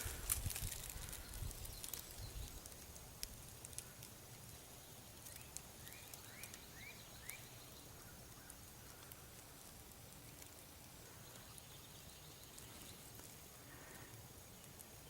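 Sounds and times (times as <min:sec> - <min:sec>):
faint rustles: 0:00.0 - 0:06.6
small ticks: 0:00.0 - 0:15.0
bird chirping: 0:04.8 - 0:09.2, 0:11.0 - 0:15.0.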